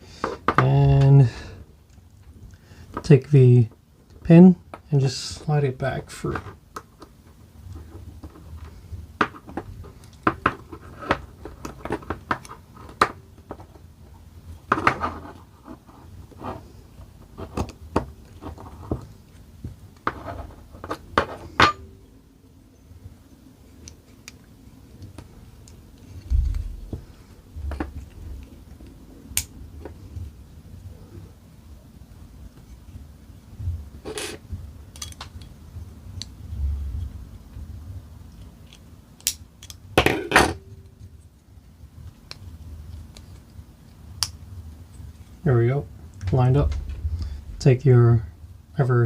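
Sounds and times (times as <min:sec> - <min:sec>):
metallic clicks of steel parts: 0:34.1 - 0:35.6
dull low bump: 0:46.2 - 0:48.0.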